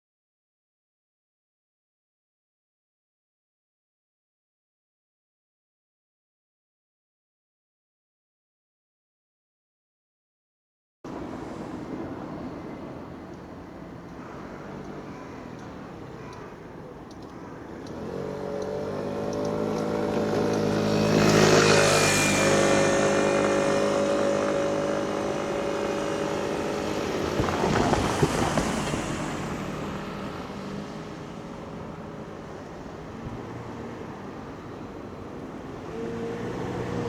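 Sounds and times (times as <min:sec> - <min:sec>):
vehicle engine drone: 0:11.1 - 0:37.0.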